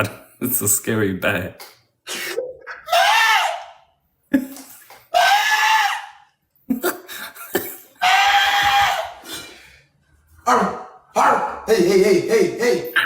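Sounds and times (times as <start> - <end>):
person shrieking animal calls: 2.3 - 3.8, 5.1 - 6.3, 8.0 - 9.3.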